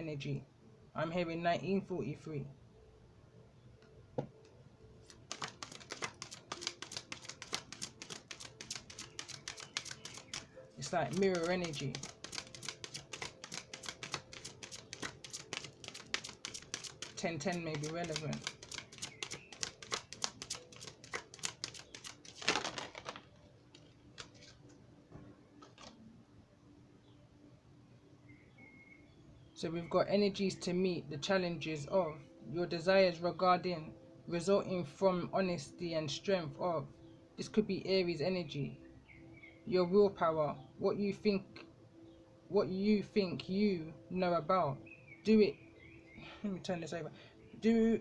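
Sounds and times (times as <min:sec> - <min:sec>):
cards being handled: 0:05.0 - 0:24.8, 0:25.6 - 0:26.0.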